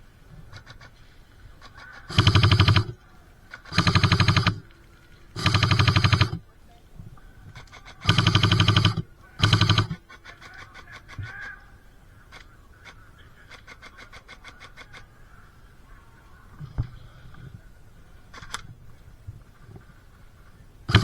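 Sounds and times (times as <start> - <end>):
airsoft gun firing bursts: 2.1 - 4.7, 5.4 - 6.4, 7.8 - 10.7.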